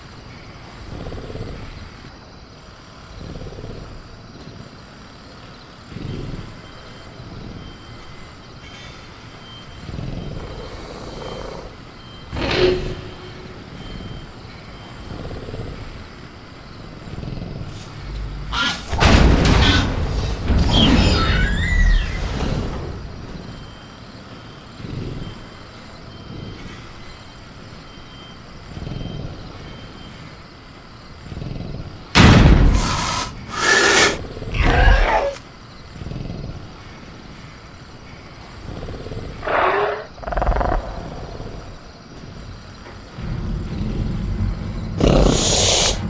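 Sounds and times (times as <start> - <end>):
faint cricket chirping: 0.0 - 46.0
creature calls: 18.4 - 19.0, 32.8 - 35.5, 38.8 - 41.8, 45.0 - 46.0
creature snarling roars: 31.4 - 35.4, 45.0 - 46.0.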